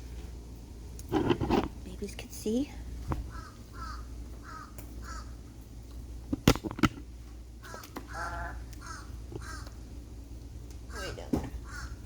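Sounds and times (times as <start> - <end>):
crow cawing: 3.2 - 5.4, 7.6 - 9.8, 10.9 - 12.0.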